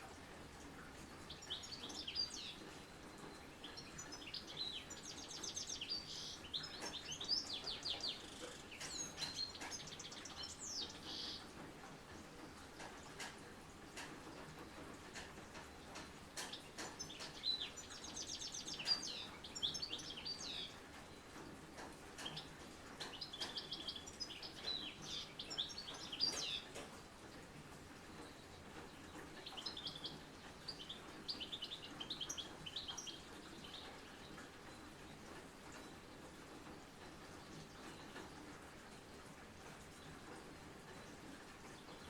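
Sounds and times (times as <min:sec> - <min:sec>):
raindrops ticking: 0:00.0 - 0:42.0
songbird chirping and trilling: 0:23.1 - 0:26.7, 0:29.4 - 0:34.4.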